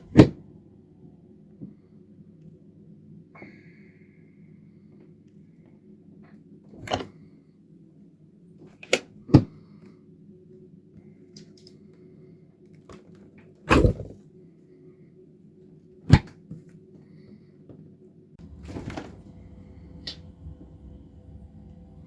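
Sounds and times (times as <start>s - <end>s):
steady low hum: 18.4s - 22.0s.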